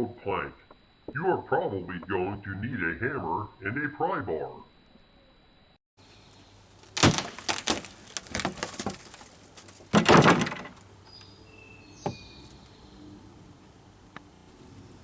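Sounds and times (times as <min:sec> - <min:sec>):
wood plank cracking: 0:06.7 - 0:10.8.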